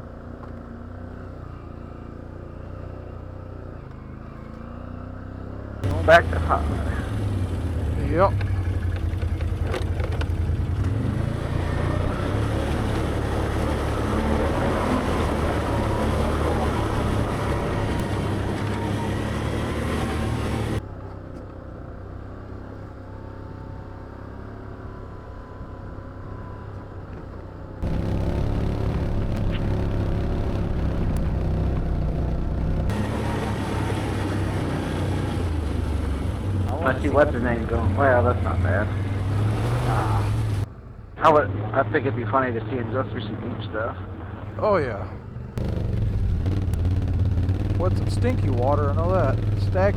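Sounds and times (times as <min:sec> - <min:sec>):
atv engine running: 0:00.0 - 0:49.9.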